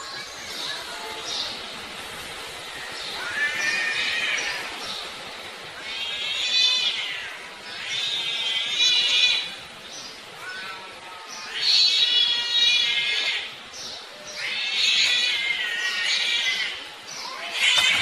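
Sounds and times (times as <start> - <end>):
cats yowling: 2.8 - 4.8, 5.8 - 9.6, 10.4 - 18.0.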